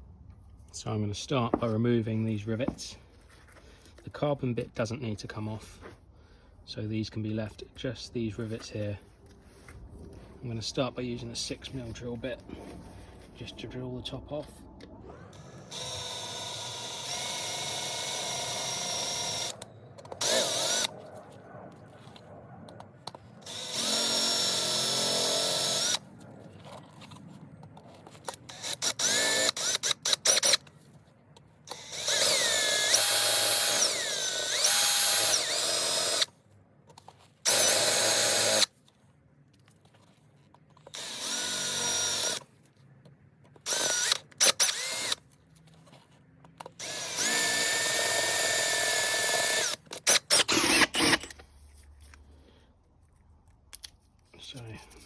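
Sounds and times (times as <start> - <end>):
electric drill drilling metal: 15.4 - 19.6, 20.2 - 20.9, 23.4 - 26.0, 28.5 - 30.6, 31.7 - 36.3, 37.5 - 38.7, 40.9 - 42.4, 43.6 - 45.2, 46.8 - 51.3.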